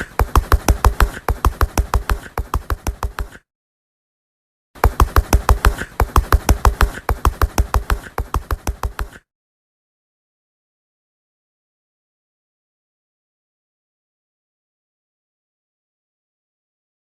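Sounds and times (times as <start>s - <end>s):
rapid knocking: 0.0s - 3.4s, 4.8s - 9.2s.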